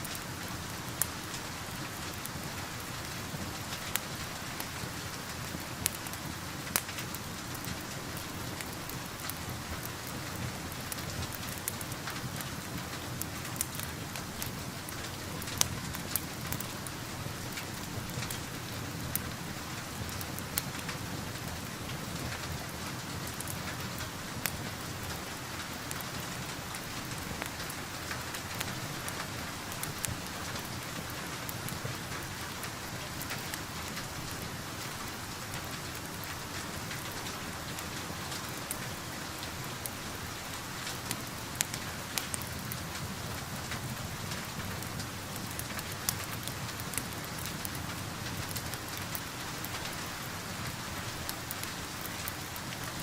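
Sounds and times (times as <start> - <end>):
steady rain: 0.0 - 53.0
wood fire crackling: 0.0 - 53.0.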